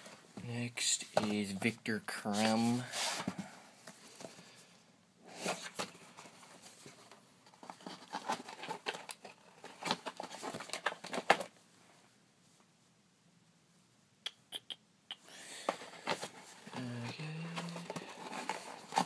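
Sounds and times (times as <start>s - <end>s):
packaging rustling and scraping: 2.1s - 4.6s, 5.3s - 11.6s, 15.6s - 19.0s.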